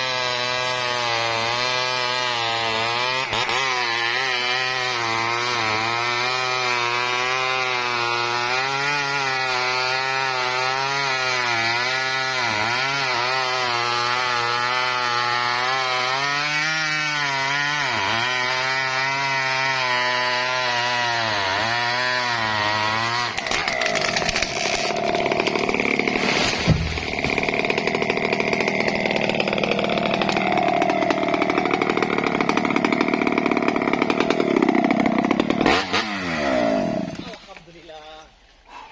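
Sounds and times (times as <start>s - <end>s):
chainsaw cutting wood: 0.0s - 37.9s
sharp knock: 26.5s - 27.3s.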